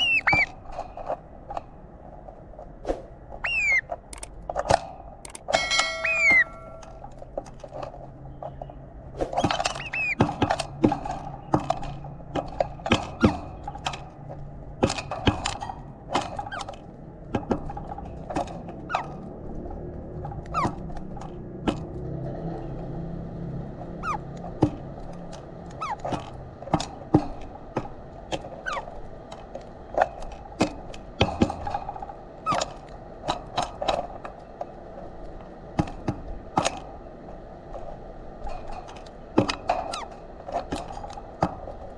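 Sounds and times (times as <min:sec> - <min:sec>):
birds pecking seed at feeder: 0:00.0 - 0:01.6, 0:03.3 - 0:04.8, 0:05.6 - 0:08.7.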